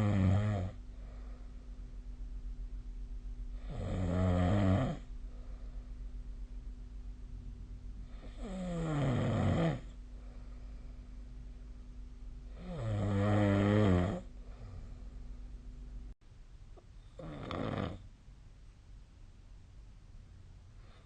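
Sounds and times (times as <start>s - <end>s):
person snoring: 0.0s - 1.4s, 3.5s - 5.5s, 8.0s - 10.0s, 12.5s - 15.0s, 17.2s - 18.0s.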